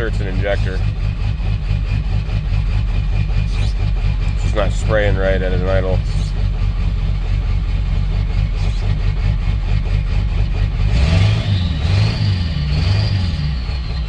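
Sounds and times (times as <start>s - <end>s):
high whine: 0.0s - 9.7s
truck engine idling with miss: 0.0s - 14.0s.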